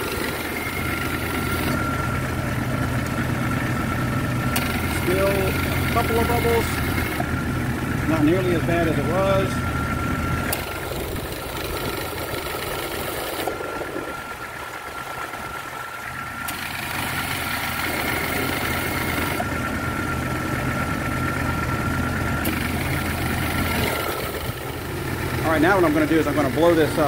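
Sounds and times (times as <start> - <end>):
car engine idling: 0.0 - 27.0
compressor clutch click: 4.5 - 7.2, 10.5 - 13.5, 16.5 - 19.4, 22.4 - 24.7.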